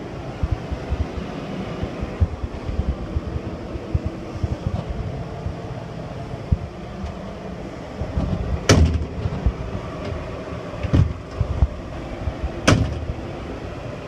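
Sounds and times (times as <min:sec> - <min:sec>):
steady low rumble: 0:00.0 - 0:14.0
cabinet doors clacking shut: 0:08.6 - 0:09.3, 0:10.8 - 0:11.2, 0:12.6 - 0:13.2.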